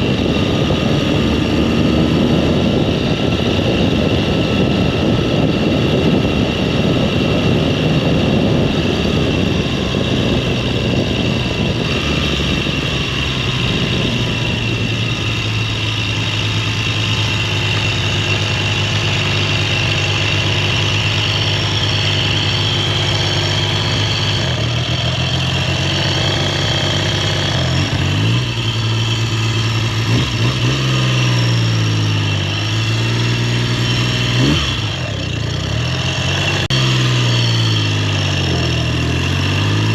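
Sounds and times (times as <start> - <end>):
motorcycle engine running and revving: 0.0 - 39.9.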